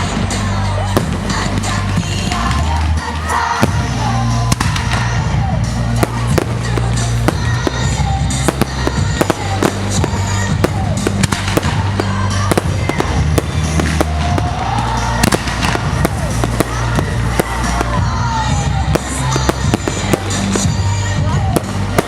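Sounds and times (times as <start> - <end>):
fireworks bangs and crackles: 0.0 - 22.0
loud music with heavy bass: 0.0 - 22.0.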